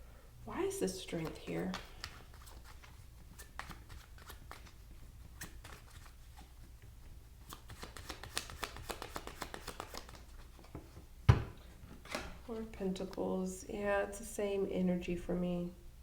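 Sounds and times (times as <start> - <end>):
cards being shuffled: 1.1 - 11.0.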